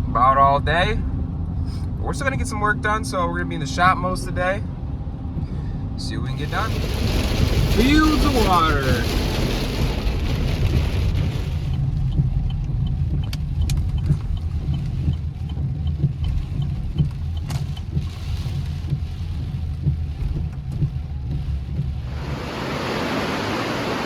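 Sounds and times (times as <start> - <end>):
vehicle engine rumble: 0.0 - 24.0
faint fast ticking: 11.5 - 22.1.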